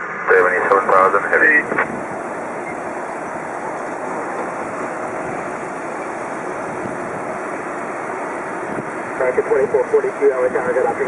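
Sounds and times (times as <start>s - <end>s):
radio static hiss: 0.0s - 6.7s, 7.4s - 11.0s.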